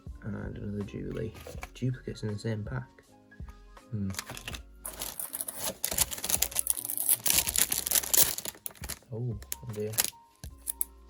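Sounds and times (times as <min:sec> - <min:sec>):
plastic wrapper crinkling and tearing: 0:04.1 - 0:11.0.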